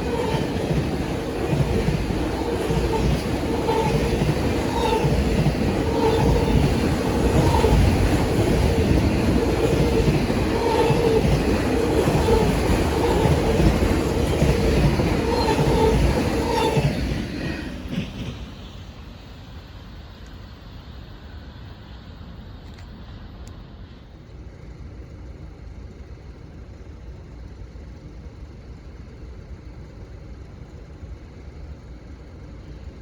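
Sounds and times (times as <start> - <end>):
wheels squealing: 0.0 - 17.2
freight train rumbling past: 0.0 - 28.6.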